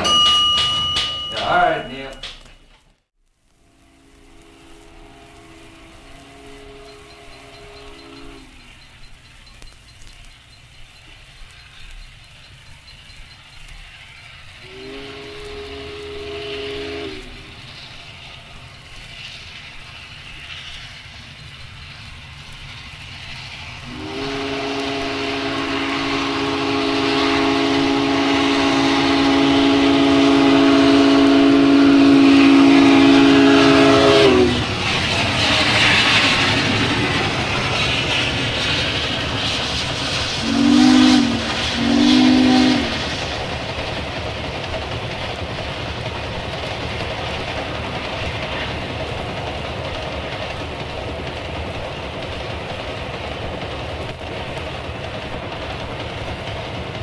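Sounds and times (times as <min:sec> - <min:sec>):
train rumble: 0:00.0 - 0:57.0
steam locomotive whistle: 0:03.6 - 0:10.1, 0:11.0 - 0:18.1, 0:23.8 - 0:43.2.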